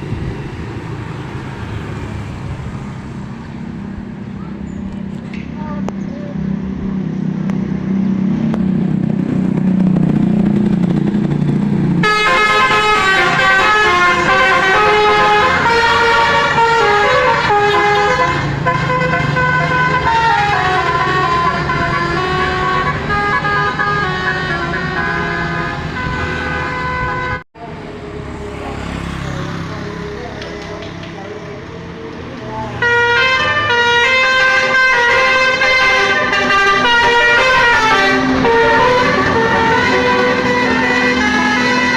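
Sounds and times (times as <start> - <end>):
bus engine rumbling: 0.0 - 41.9
multi-tone bus horn tune: 12.0 - 27.5, 32.7 - 41.9.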